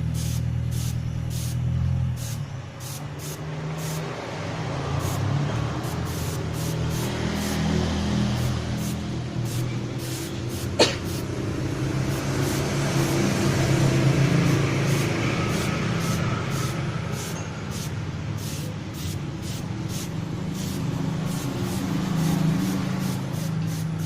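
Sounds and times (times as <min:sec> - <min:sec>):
small motorcycle engine running: 0:04.8 - 0:18.0.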